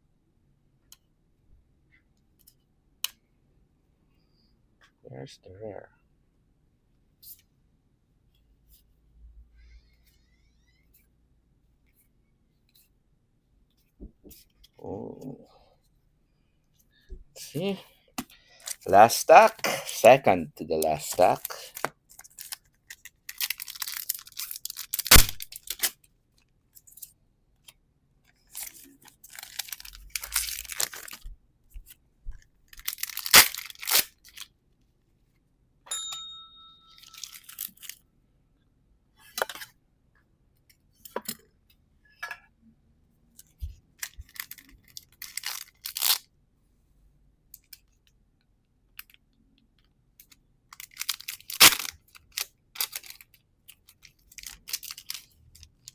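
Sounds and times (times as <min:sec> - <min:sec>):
cards being handled: 0:18.6 - 0:25.9, 0:28.6 - 0:31.2, 0:32.8 - 0:34.4, 0:50.8 - 0:55.3
wrappers tearing and crinkling: 0:20.8 - 0:22.6, 0:23.3 - 0:25.9, 0:28.6 - 0:31.2, 0:32.8 - 0:34.4, 0:45.2 - 0:46.2, 0:50.8 - 0:53.2, 0:54.4 - 0:55.3.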